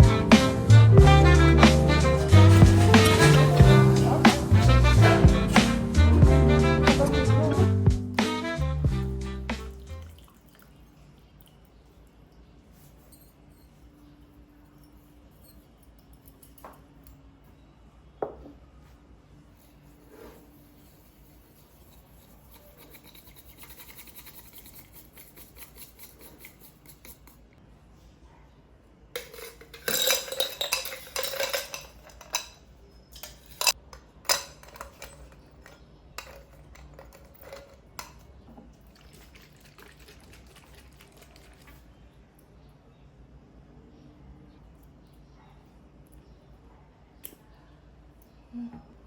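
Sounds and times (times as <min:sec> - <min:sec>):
dishes and cutlery clattering: 0:01.6 - 0:06.1, 0:29.2 - 0:38.5.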